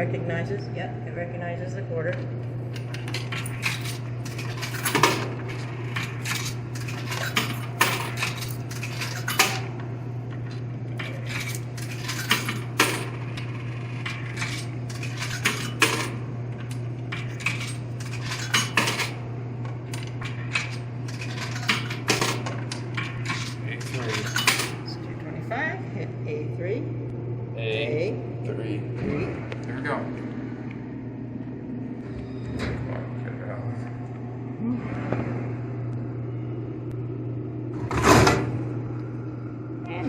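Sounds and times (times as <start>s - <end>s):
steady low hum: 0.0s - 40.0s
coins clinking into vending machine: 2.7s - 9.8s, 11.0s - 19.2s, 20.0s - 25.0s.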